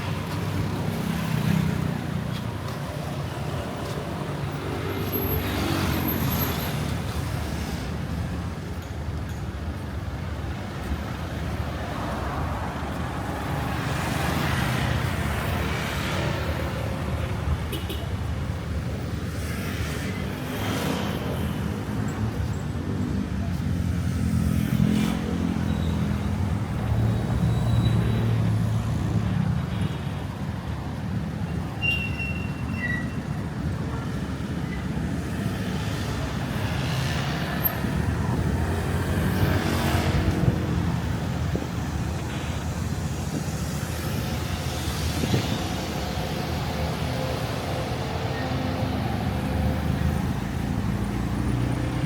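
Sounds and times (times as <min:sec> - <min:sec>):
vehicles passing: 0:00.0 - 0:52.0.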